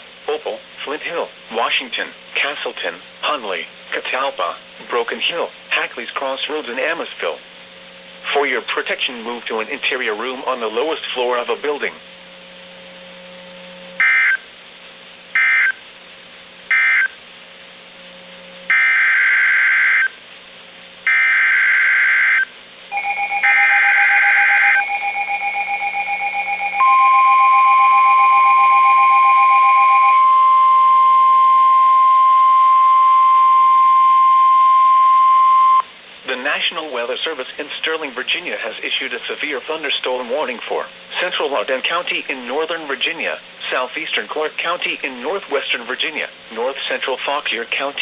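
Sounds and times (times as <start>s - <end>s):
harsh buzzing tone: 12.7s - 14.5s, 15.3s - 15.8s, 16.7s - 17.2s, 21.0s - 35.9s
steady warning alarm tone: 14.0s - 14.5s, 15.4s - 15.8s, 16.7s - 17.2s, 18.7s - 20.2s, 21.1s - 35.9s
shrill data tone bursts: 22.3s - 35.9s.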